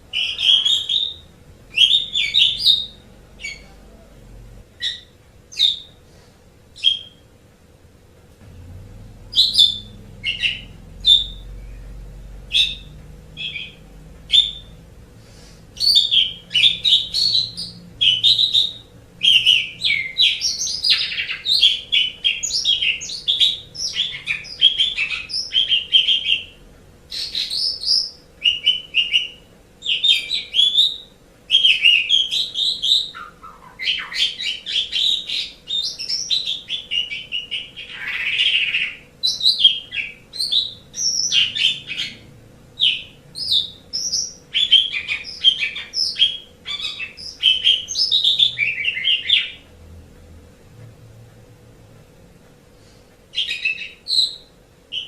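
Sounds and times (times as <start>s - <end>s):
starling chattering and whistling: 0.1s - 3.7s, 9.3s - 11.9s, 12.5s - 14.8s, 15.8s - 26.5s.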